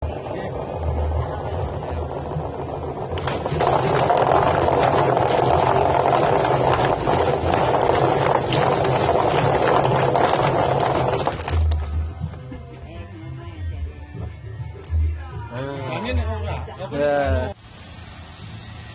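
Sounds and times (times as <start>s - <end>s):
plucking machine rushing and rattling: 0.0s - 12.1s.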